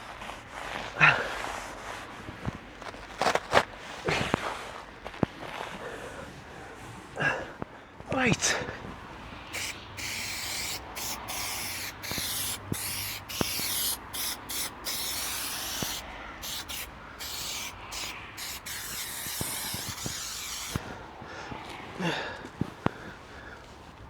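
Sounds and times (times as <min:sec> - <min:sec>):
aerosol can hissing: 0:09.4 - 0:21.0.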